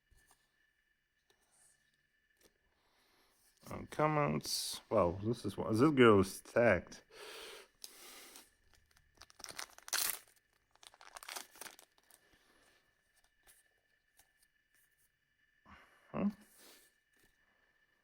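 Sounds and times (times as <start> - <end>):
cards and wrapper rustling: 7.8 - 12.4.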